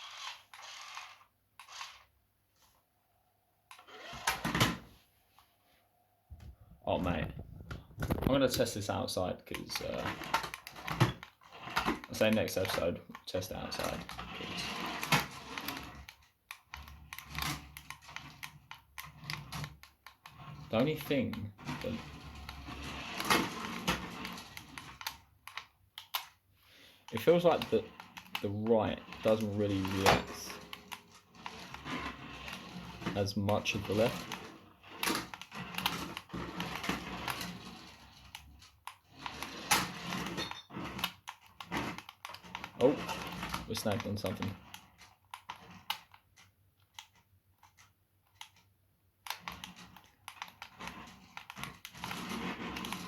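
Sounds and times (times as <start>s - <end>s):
small electric motor running: 0.0s - 2.0s
toy car motor whirring: 0.0s - 2.1s, 3.7s - 4.6s, 9.6s - 26.4s, 27.1s - 48.6s, 49.2s - 53.0s
plastic knocks and clatters: 7.2s - 8.7s
plastic clicks: 15.0s - 26.4s, 27.0s - 53.0s.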